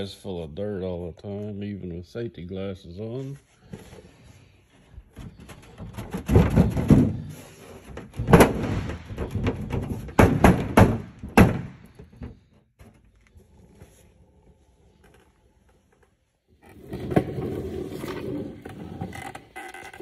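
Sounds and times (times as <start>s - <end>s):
heavy knocks and thuds: 5.2s - 12.5s.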